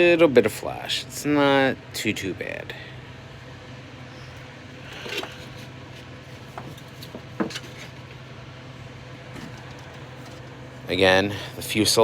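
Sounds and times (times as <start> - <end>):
air conditioning hum: 0.0 - 12.0.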